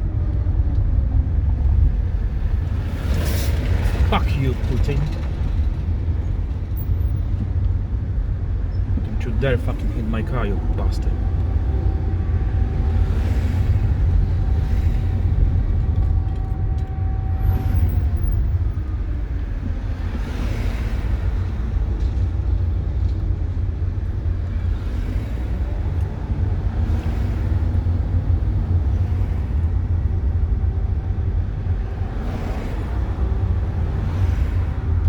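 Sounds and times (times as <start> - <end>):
low outdoor rumble: 0.0 - 35.0
distant air raid siren wailing: 10.6 - 20.4.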